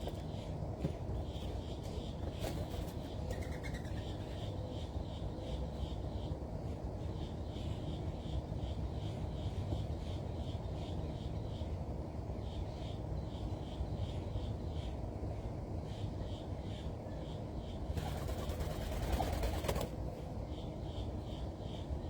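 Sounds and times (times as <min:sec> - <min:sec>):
bird wingbeats taking off: 0:18.0 - 0:20.0.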